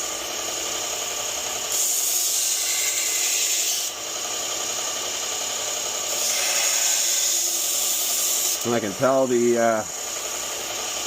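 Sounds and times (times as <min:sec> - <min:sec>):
belt grinder running: 0:00.0 - 0:11.0
knife edge hissing on grinder belt: 0:05.8 - 0:11.0.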